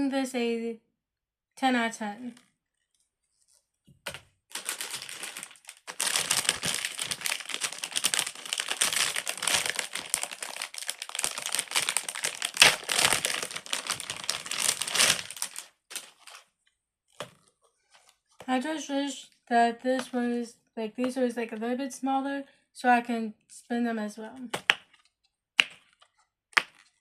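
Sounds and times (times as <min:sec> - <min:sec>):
fidget toy crinkling and clicking: 0:04.6 - 0:16.3.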